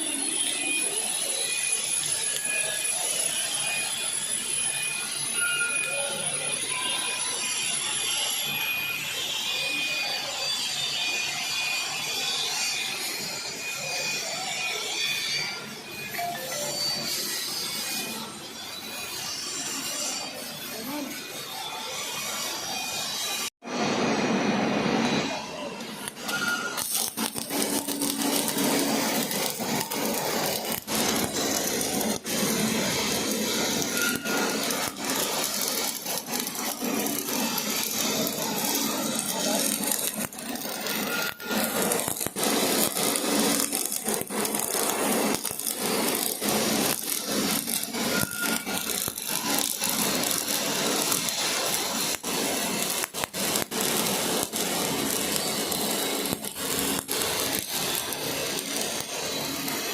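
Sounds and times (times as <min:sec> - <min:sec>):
welding arc crackling: 0:24.1 - 0:59.9.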